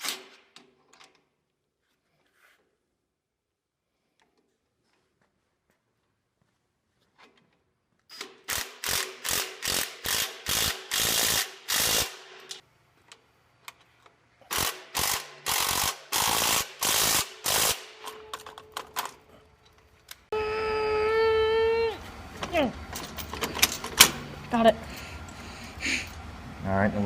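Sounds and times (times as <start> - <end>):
ratchet clicking: 8.1 - 12.6, 14.5 - 17.8.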